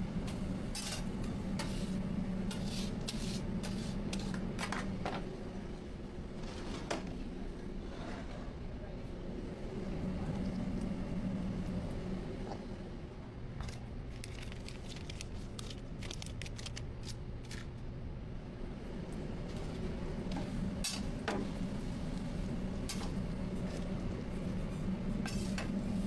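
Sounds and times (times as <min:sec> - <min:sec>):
low hum of a busy food stall: 0:00.0 - 0:26.0.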